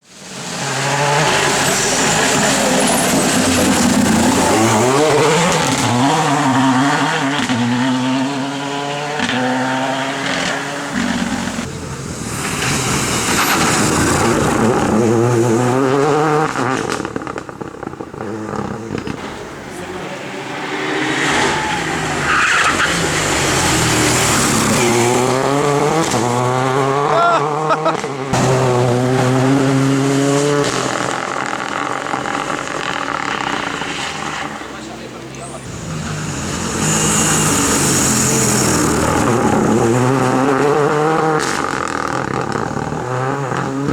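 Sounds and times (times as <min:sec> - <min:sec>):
rally car engine accelerating: 0:00.2 - 0:43.9
tyres squealing: 0:16.5 - 0:28.6.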